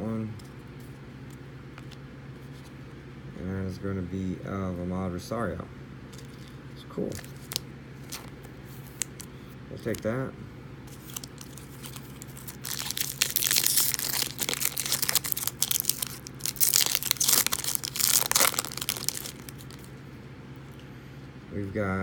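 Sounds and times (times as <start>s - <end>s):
wrapper tearing and crinkling: 7.1s - 9.3s, 10.9s - 19.9s.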